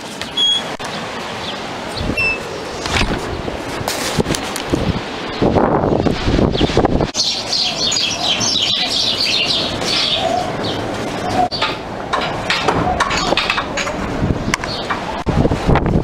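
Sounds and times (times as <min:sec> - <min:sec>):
small birds chirping: 0:05.4 - 0:11.8.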